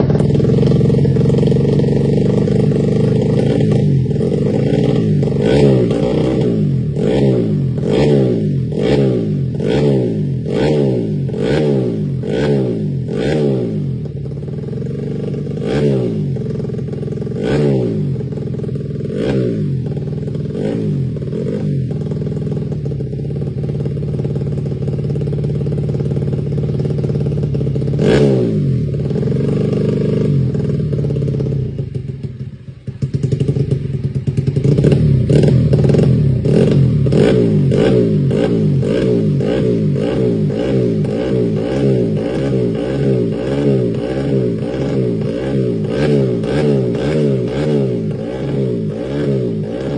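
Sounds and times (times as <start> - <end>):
scooter engine revving: 0.0 - 49.9.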